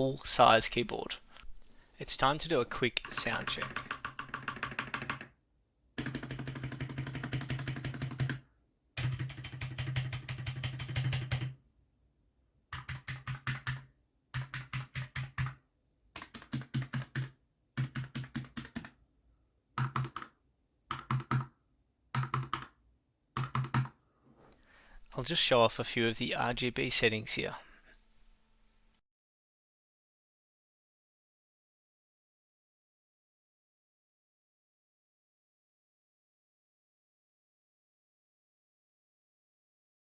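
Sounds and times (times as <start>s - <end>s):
typing on mechanical keyboard: 3.0s - 5.3s, 6.0s - 8.4s, 9.0s - 11.6s, 12.7s - 15.6s, 16.2s - 19.0s, 19.8s - 21.6s, 22.2s - 22.8s, 23.4s - 24.0s.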